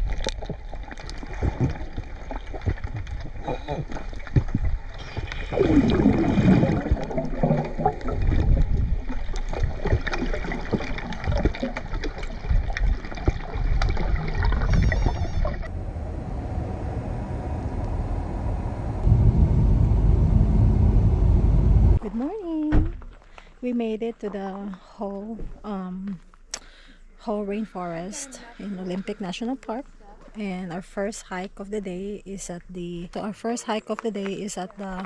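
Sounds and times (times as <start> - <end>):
water splashing and gurgling: 0.0 - 15.9
steady water rush: 15.7 - 22.0.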